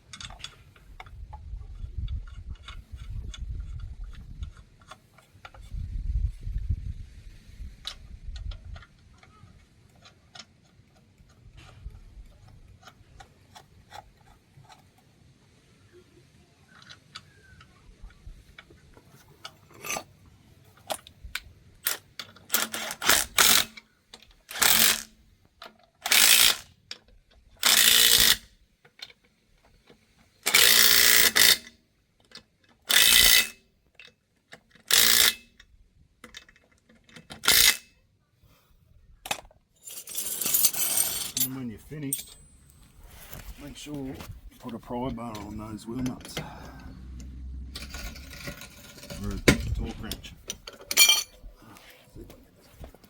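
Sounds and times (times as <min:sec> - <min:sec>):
impact wrench on wheel nuts: 0:21.8 - 0:26.8, 0:27.6 - 0:28.5, 0:30.4 - 0:31.7, 0:32.8 - 0:33.6, 0:34.6 - 0:38.0, 0:47.8 - 0:49.8.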